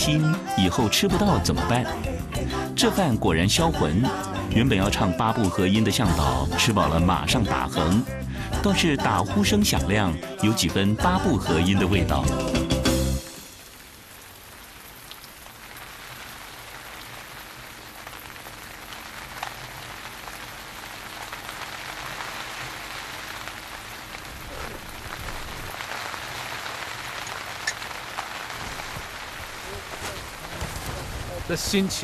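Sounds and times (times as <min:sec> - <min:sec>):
heavy rain falling: 0:11.4 - 0:32.0.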